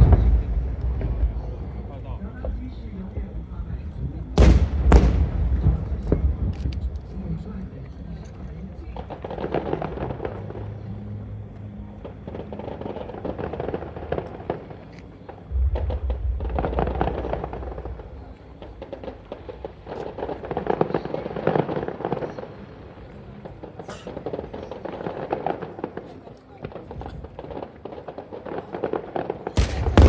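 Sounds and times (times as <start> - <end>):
deep firework boom: 0.0 - 7.6, 15.5 - 19.9, 29.6 - 30.0
fireworks crackling pops: 0.0 - 10.8, 12.0 - 30.0.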